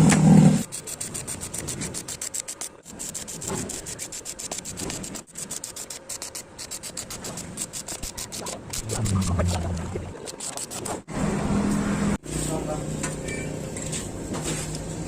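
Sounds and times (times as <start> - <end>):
rapid hand rasping or scraping: 0.6 - 11.0.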